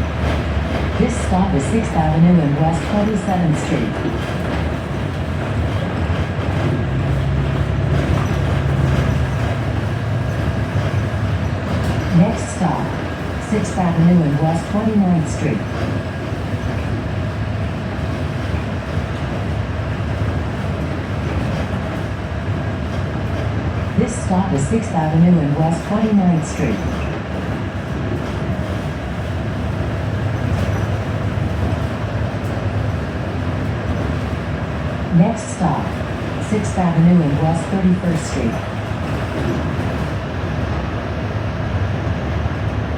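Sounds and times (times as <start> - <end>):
road noise: 0.0 - 21.3
bus engine drone: 0.0 - 42.9.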